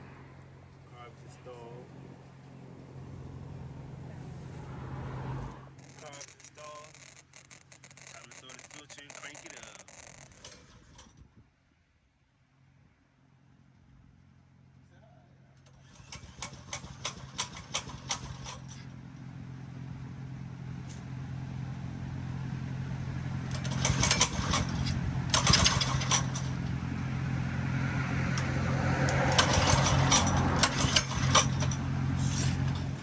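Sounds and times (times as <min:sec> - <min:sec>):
mini bike engine running: 0:05.8 - 0:11.1, 0:15.7 - 0:18.9, 0:22.3 - 0:33.0
sharp clicking and rattling: 0:05.8 - 0:11.2, 0:15.6 - 0:18.9, 0:23.5 - 0:27.1, 0:28.2 - 0:33.0.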